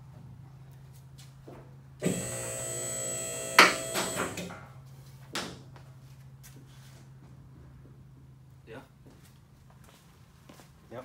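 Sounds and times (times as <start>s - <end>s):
small electric motor whining: 2.0s - 4.5s.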